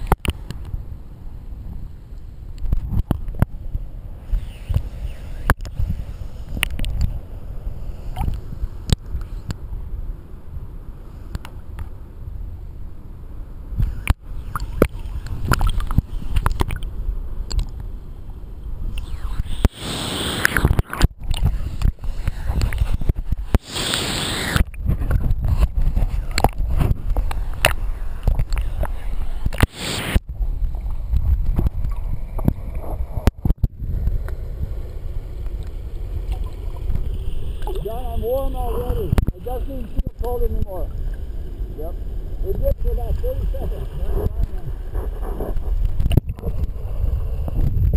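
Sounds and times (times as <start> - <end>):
water sloshing and splashing: 14.5 - 16.8, 35.5 - 37.8
low rumble: 30.2 - 47.9.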